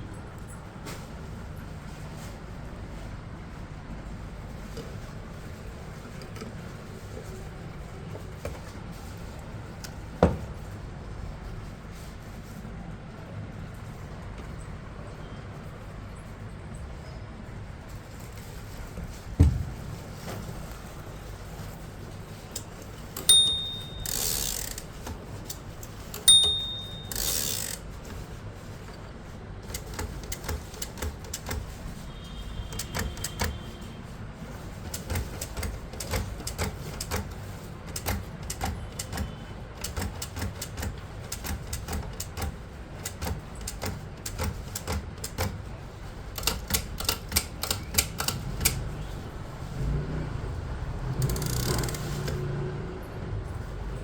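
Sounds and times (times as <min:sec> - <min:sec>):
braille typewriter key clicks: 0:22.6 - 0:27.9, 0:29.7 - 0:31.8, 0:32.7 - 0:33.7, 0:34.8 - 0:45.6, 0:46.4 - 0:48.8.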